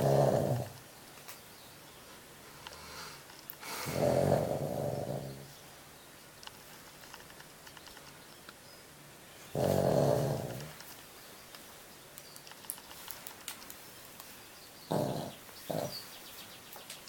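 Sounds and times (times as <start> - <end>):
dog snoring: 0.0 - 0.8, 3.6 - 5.5, 9.6 - 10.8, 14.9 - 15.9.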